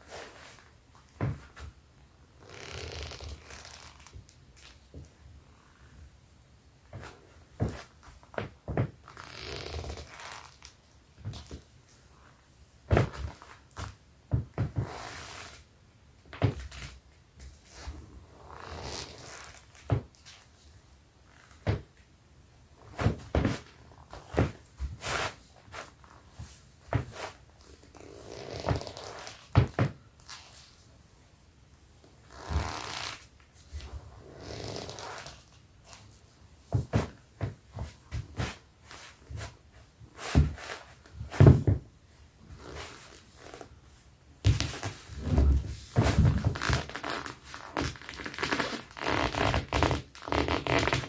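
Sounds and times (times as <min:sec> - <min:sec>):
leather boots squeaking and rubbing: 0:02.4 - 0:04.7, 0:06.9 - 0:11.6, 0:12.9 - 0:15.7, 0:17.6 - 0:20.4, 0:21.3 - 0:21.9, 0:22.8 - 0:30.7, 0:32.2 - 0:36.1, 0:42.4 - 0:43.7, 0:44.4 - 0:51.0.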